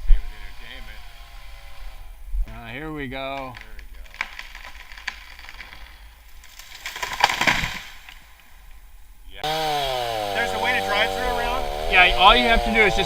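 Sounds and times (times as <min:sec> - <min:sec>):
wood cracking and snapping: 0:03.4 - 0:08.2
tree crashing down: 0:06.4 - 0:08.2.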